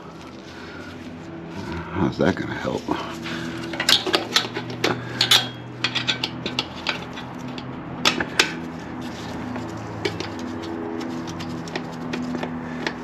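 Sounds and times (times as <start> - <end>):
steady low hum: 0.0 - 13.0
metal tools clinking: 3.5 - 8.7.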